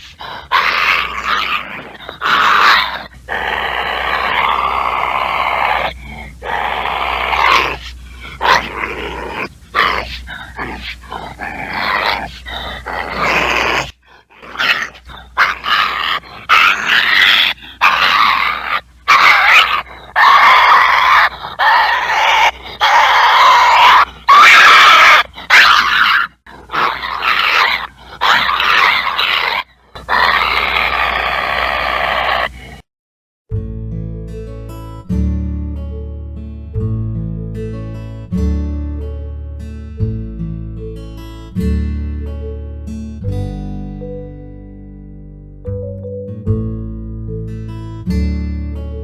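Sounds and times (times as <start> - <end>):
badger growling and hissing: 0.0 - 32.9.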